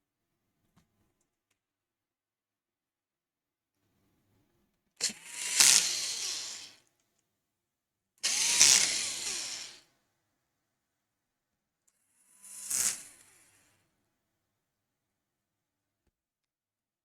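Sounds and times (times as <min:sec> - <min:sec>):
electric screwdriver running: 0:05.0 - 0:06.8, 0:08.2 - 0:09.8, 0:12.4 - 0:13.6.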